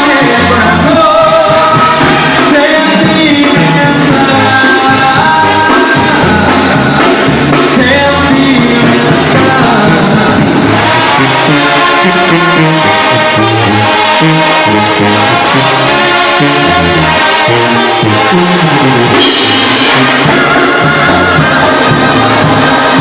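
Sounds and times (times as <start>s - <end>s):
banda playing loud: 0.0s - 23.0s
person singing melody: 0.0s - 23.0s.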